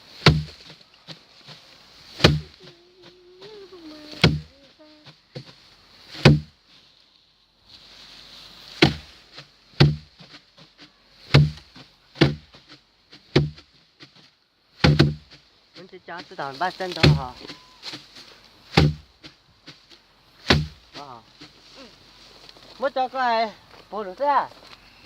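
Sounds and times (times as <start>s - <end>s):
hard blows knocking on wood: 0.2s - 0.8s, 2.2s - 2.5s, 4.2s - 4.5s, 6.2s - 6.5s, 8.8s - 9.0s, 9.8s - 10.4s, 11.3s - 14.2s, 14.8s - 15.4s, 17.0s - 18.0s, 18.7s - 19.4s, 20.4s - 21.5s.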